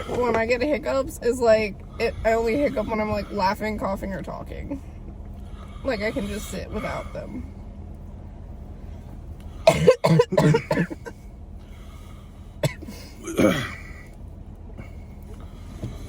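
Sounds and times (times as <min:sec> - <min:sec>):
person coughing: 0:09.7 - 0:11.2, 0:12.6 - 0:14.0.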